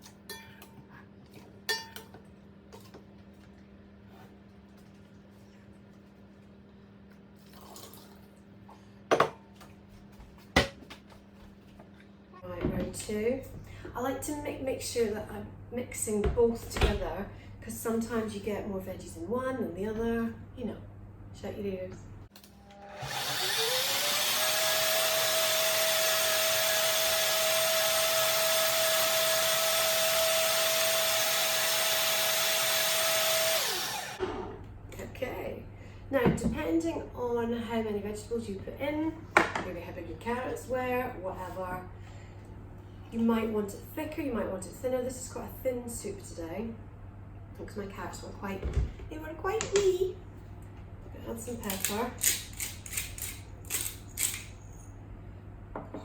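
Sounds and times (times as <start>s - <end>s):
blender motor whining: 22.4s - 34.3s.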